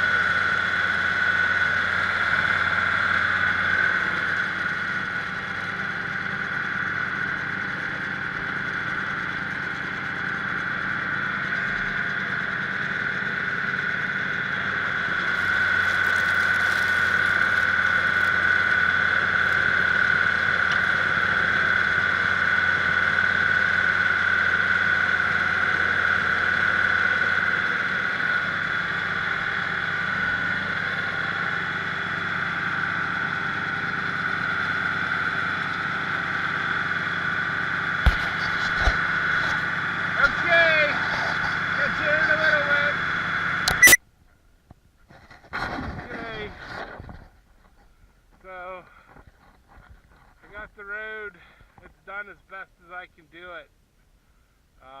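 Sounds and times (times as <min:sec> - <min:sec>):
diesel engine running: 0:00.0 - 0:44.0
high whine: 0:00.0 - 0:44.0.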